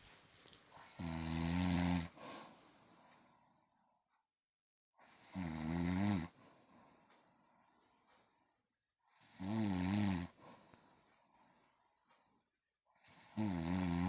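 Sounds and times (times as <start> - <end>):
person snoring: 0.8 - 2.5, 5.0 - 6.4, 9.1 - 10.6, 13.0 - 14.0
faint breathing: 1.8 - 4.3, 6.3 - 9.3, 10.2 - 13.4.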